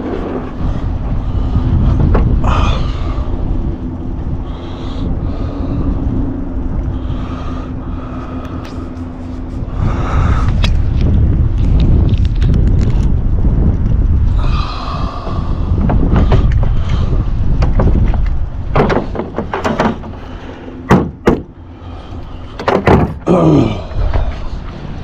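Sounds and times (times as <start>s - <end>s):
wind rumbling on microphone: 0.0s - 25.0s
sharp knocks and clunks: 17.6s - 21.6s, 22.5s - 23.3s.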